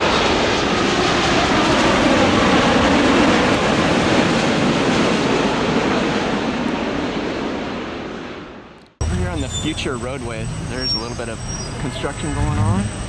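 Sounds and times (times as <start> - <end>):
jet engine noise: 0.0 - 13.0
tone sliding down in pitch: 12.1 - 13.0.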